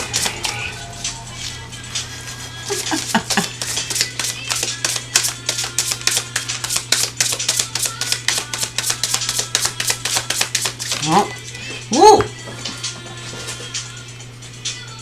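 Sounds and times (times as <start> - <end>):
cards being shuffled: 0.0 - 0.7, 2.7 - 11.4
background music: 0.0 - 15.0.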